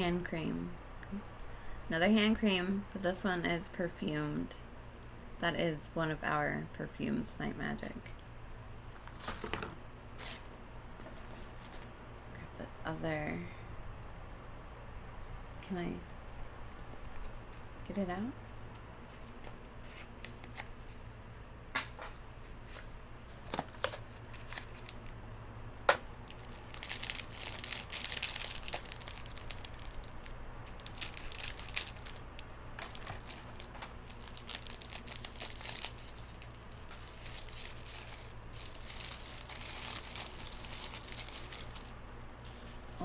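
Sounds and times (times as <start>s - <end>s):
packaging crinkling and tearing: 23.4s - 25.2s, 26.1s - 43.0s.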